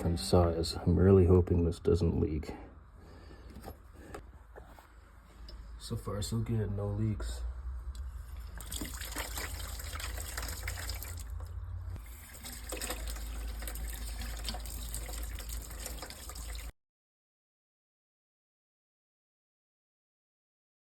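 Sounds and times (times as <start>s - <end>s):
low rumble: 5.7s - 8.7s, 9.5s - 12.0s
water running from a tap: 8.4s - 16.7s.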